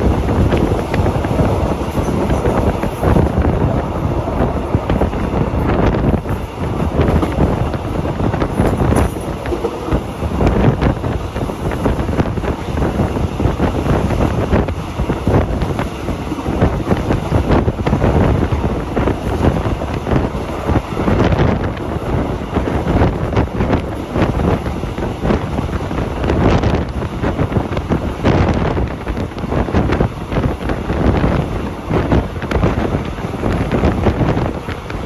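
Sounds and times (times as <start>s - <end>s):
wind buffeting microphone: 0.0s - 35.0s.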